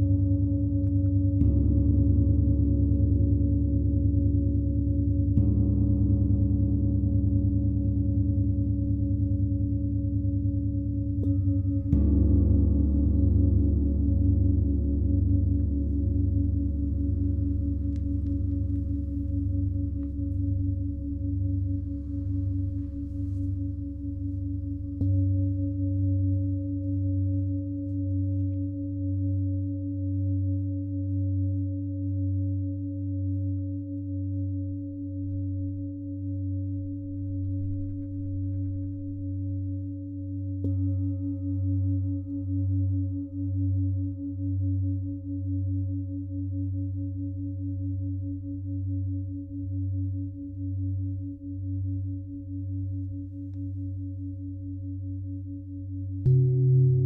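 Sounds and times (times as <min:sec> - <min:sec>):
bowl struck ringing high: 0:56.3 - 0:57.0
singing bowls ringing drone: 0:56.3 - 0:57.0.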